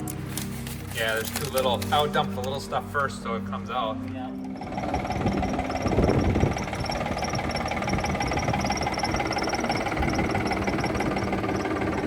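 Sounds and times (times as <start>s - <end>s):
tractor engine running: 4.4s - 12.0s.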